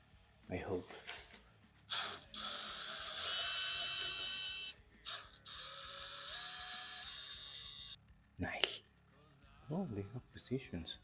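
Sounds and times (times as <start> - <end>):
power tool motor whine: 1.9 - 8.0.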